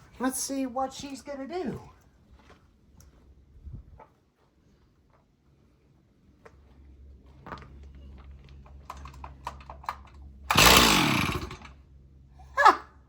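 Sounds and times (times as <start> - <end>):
chainsaw pull-start: 8.9 - 11.8.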